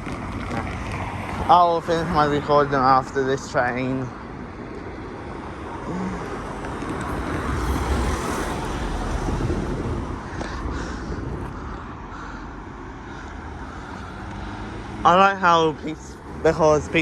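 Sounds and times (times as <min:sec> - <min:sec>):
train passing: 0:06.8 - 0:12.2.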